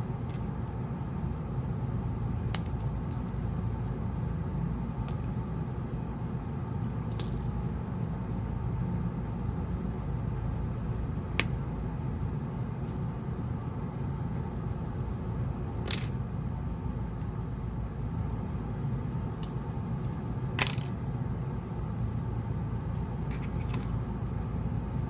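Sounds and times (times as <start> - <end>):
steady low hum: 0.0 - 25.0
metallic clicks of tools and parts: 6.8 - 7.7, 15.9 - 16.2, 19.4 - 21.0.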